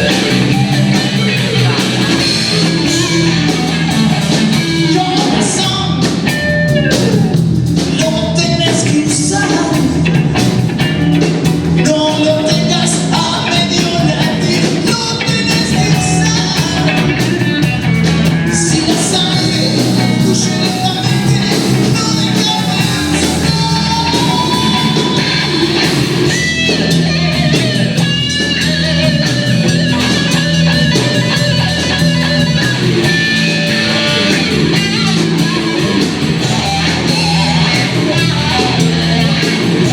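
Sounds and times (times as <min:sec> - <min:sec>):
person singing: 0:00.0 - 0:10.2, 0:11.8 - 0:39.9
bass guitar: 0:00.0 - 0:39.9
drums: 0:00.0 - 0:39.9
electric guitar: 0:00.0 - 0:39.9.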